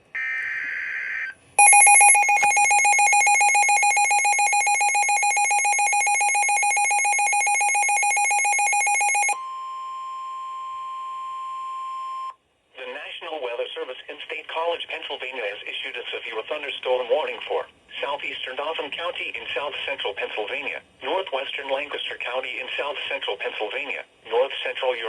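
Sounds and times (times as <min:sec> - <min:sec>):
rapidly pulsing radio alarm: 0:01.6 - 0:09.4
steady single-pitch alert tone: 0:01.6 - 0:09.6.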